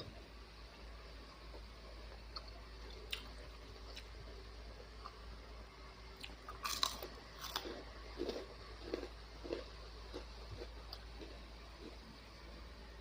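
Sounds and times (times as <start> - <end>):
mouth chewing: 6.2 - 12.0.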